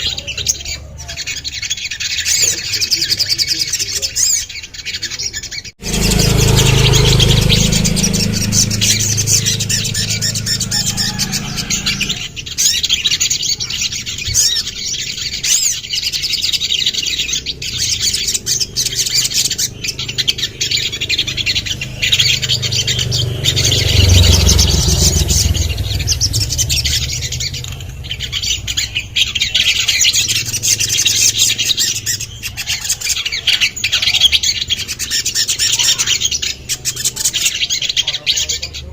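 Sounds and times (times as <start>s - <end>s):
bird chirping and trilling: 0.0s - 38.9s
loud low rumble: 5.8s - 12.6s, 17.7s - 32.4s.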